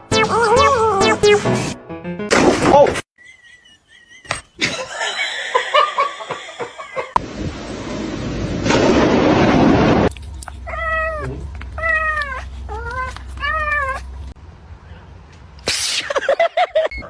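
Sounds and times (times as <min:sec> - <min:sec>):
cat meowing: 0:10.7 - 0:14.1.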